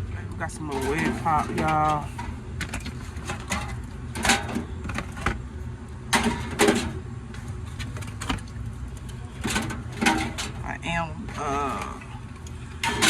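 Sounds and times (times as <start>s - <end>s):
steady low hum: 0.0s - 13.0s
soda cans clinking and knocking: 0.7s - 5.4s, 6.1s - 7.0s, 9.0s - 10.7s, 12.8s - 13.0s.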